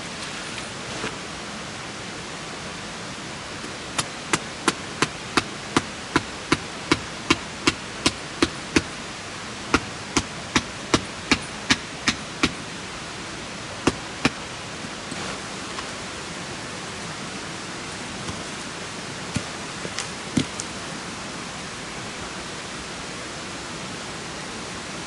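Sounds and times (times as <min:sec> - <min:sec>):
sharp hammer strikes: 0:09.7 - 0:12.6.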